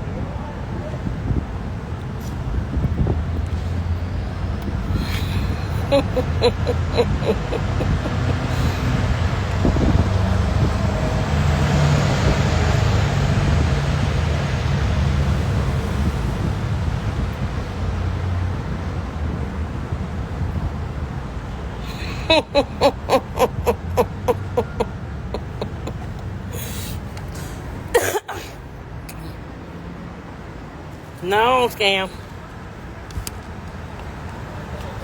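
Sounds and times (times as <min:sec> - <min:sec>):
vehicle engine rumble: 0:00.8 - 0:27.9.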